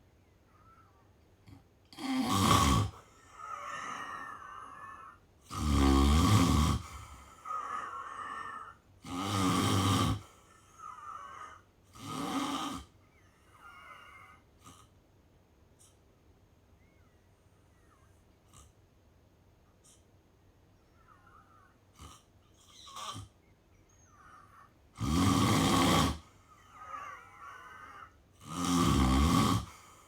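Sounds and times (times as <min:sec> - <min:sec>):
person snoring: 0:01.9 - 0:14.9, 0:24.2 - 0:30.0.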